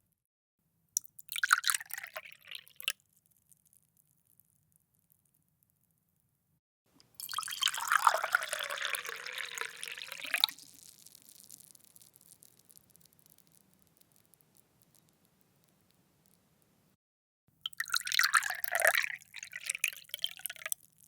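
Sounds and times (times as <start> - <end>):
water dribbling and dripping: 1.0 - 3.0, 7.0 - 16.8, 17.6 - 21.0
water poured into a glass: 1.3 - 3.0, 7.1 - 12.7, 17.7 - 20.8.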